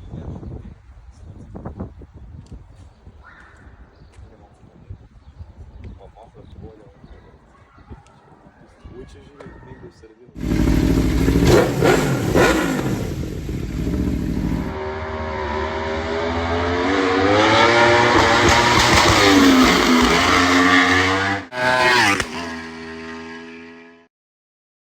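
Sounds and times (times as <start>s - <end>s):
motorcycle throttle blips: 10.4s - 23.3s
motorcycle passing by: 10.4s - 24.1s.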